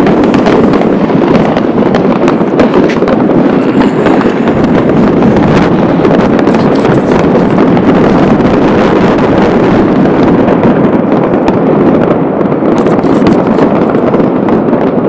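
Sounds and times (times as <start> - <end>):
fireworks bangs and crackles: 0.0 - 15.0.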